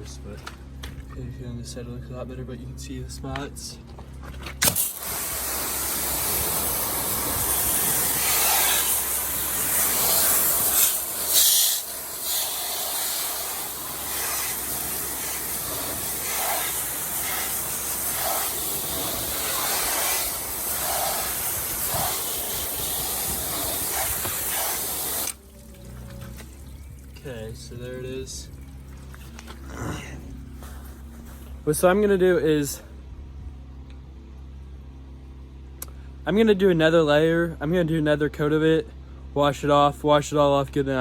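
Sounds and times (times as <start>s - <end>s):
steady low hum: 0.0s - 41.0s
pressure washer spraying: 4.6s - 26.8s.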